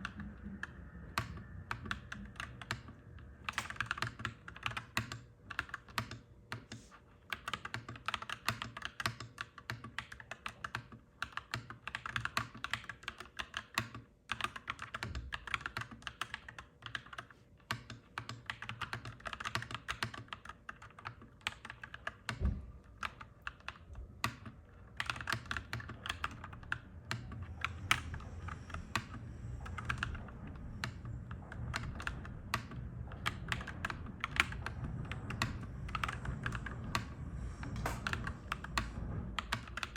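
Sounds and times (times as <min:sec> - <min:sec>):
mechanical keyboard typing: 0:00.0 - 0:39.9
low rumble: 0:26.2 - 0:39.9.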